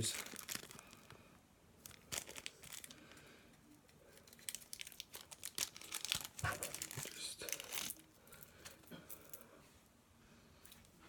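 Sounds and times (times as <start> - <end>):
plastic bag crinkling: 0.0 - 1.2, 1.8 - 3.2, 4.0 - 9.4.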